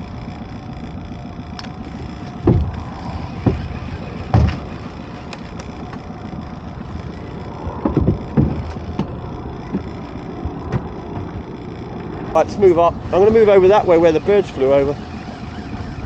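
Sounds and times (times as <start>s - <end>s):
wind: 0.0s - 16.0s
waves thumping against boat hull: 2.2s - 12.2s.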